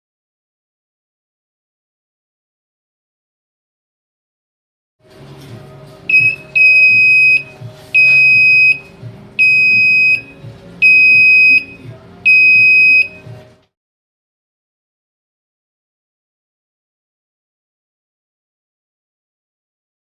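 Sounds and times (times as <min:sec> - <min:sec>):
electronic alarm buzzer beeping: 0:06.1 - 0:13.2.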